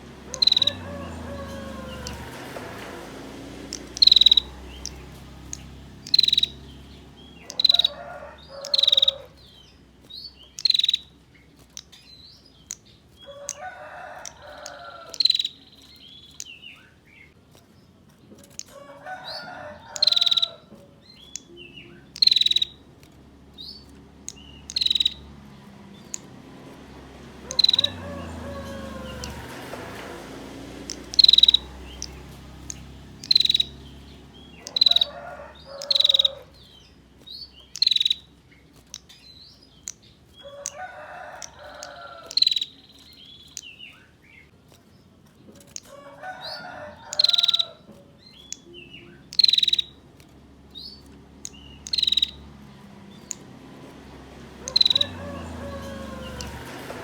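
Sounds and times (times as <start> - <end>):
distant animal calls: 0.0 - 3.1, 3.7 - 9.4, 27.4 - 36.6, 54.6 - 57.0.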